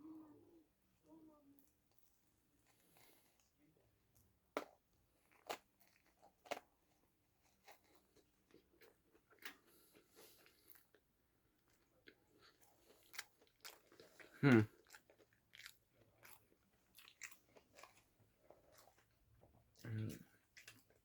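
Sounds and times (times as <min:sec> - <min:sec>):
biting and chewing crunches: 0:04.6 - 0:11.0, 0:12.0 - 0:19.2.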